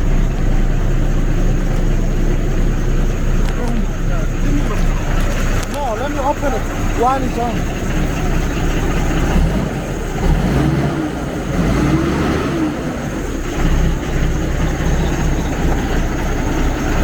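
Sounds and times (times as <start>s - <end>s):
engine idling: 0.0s - 17.0s.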